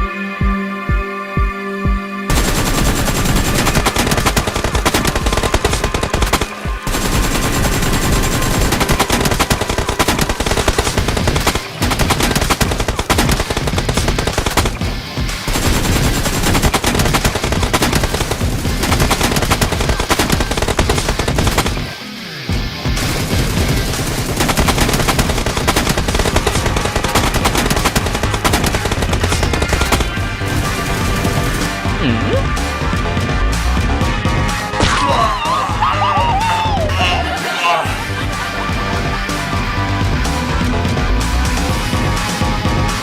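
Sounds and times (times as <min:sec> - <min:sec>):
rapid automatic gunfire: 0:02.3 - 0:22.0, 0:22.8 - 0:32.0.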